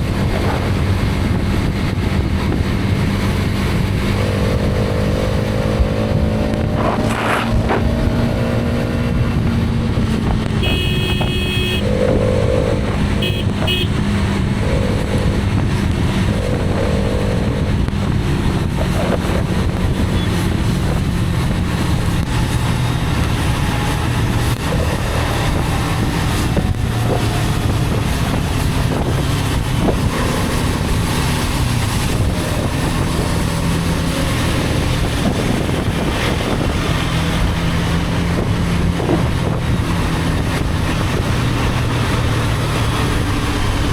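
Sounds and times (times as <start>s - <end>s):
motorcycle engine cruising: 0.0s - 43.9s
wind and road noise: 0.0s - 43.9s
vehicle horns honking: 10.6s - 14.0s.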